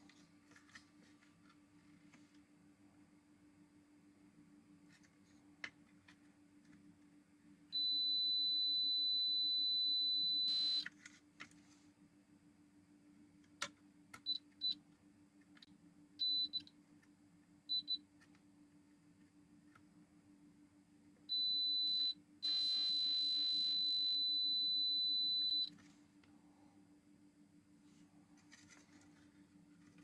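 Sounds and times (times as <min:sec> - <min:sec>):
low steady hum: 0:00.0 - 0:30.0
multimeter buzzer beeping: 0:07.8 - 0:10.8, 0:21.3 - 0:25.7.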